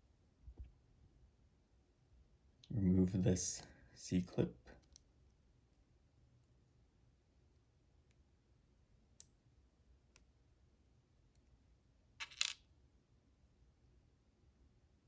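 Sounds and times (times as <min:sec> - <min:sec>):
metal part dropping on hard surface: 0:12.2 - 0:12.6.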